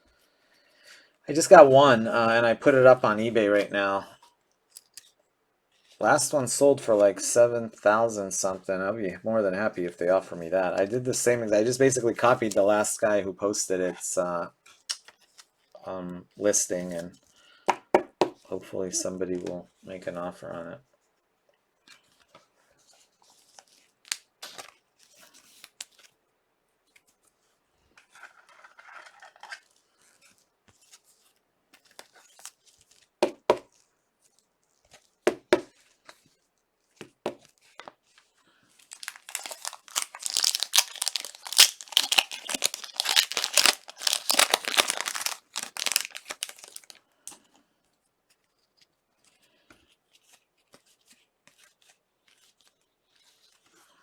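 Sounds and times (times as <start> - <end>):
cards clicking and rustling: 36.9 - 47.4
wrapper torn and crinkled: 38.8 - 47.0.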